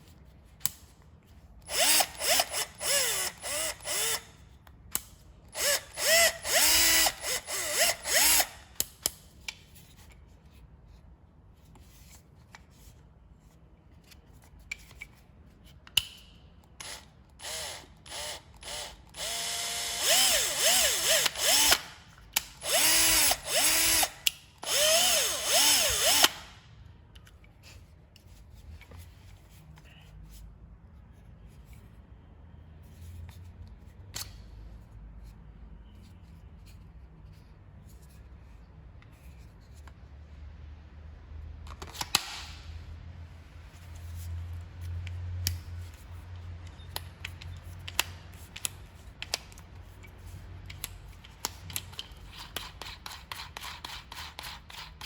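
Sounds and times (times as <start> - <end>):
cordless drill motor bursts: 1.7 - 4.3, 5.6 - 8.6, 16.8 - 22.0, 22.6 - 26.6.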